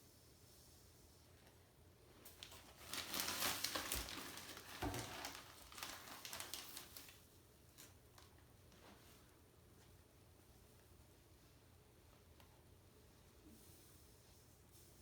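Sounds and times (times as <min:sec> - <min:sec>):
plastic bag crinkling: 0:02.3 - 0:07.2.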